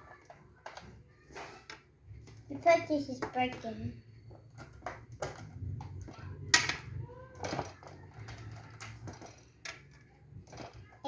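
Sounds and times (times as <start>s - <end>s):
plastic toy pieces clicking: 4.6s - 11.0s.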